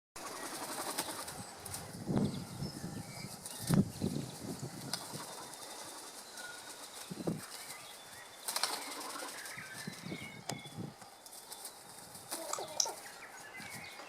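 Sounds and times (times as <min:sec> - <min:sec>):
wings flapping: 0:00.2 - 0:02.2, 0:03.2 - 0:10.2, 0:11.2 - 0:13.9
faint bird calls: 0:04.8 - 0:14.0.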